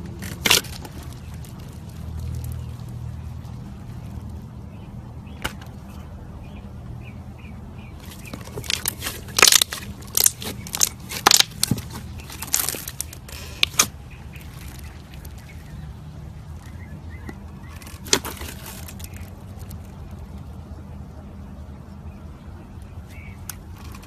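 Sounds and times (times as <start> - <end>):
slime crackling and popping: 8.0 - 13.9.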